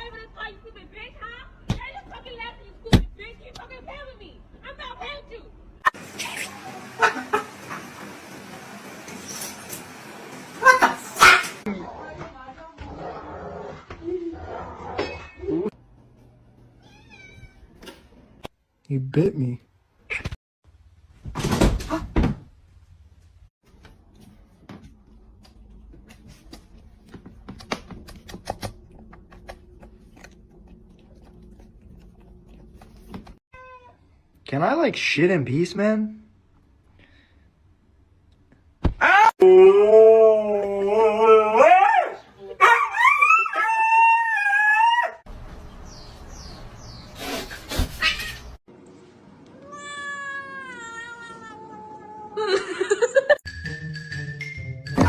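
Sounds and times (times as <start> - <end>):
cat meowing: 16.8 - 17.6.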